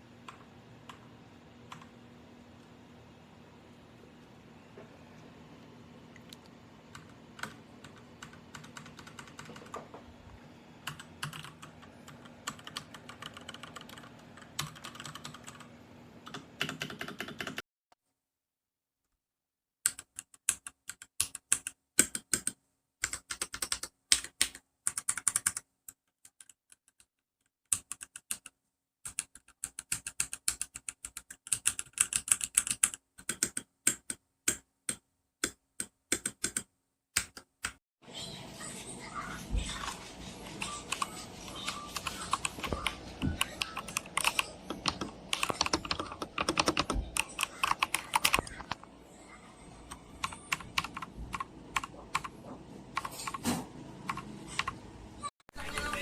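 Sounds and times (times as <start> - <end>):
faint steady hum: 0.0 - 17.0
mechanical keyboard typing: 6.9 - 9.9, 10.8 - 17.6, 19.9 - 25.6, 27.7 - 34.6, 35.8 - 37.8, 40.6 - 48.8, 49.9 - 52.3, 54.1 - 54.8, 55.6 - 56.0.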